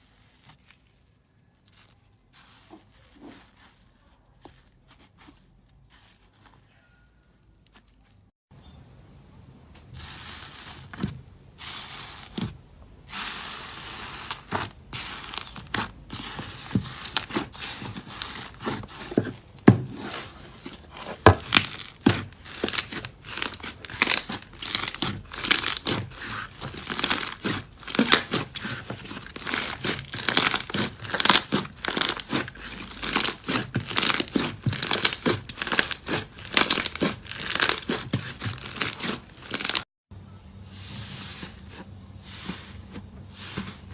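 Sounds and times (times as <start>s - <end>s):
slime crackling and popping: 21.4s - 39.8s.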